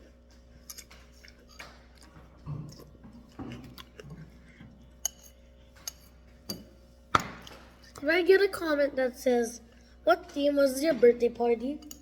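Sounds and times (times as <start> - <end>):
chewing cereal: 0.0 - 6.4.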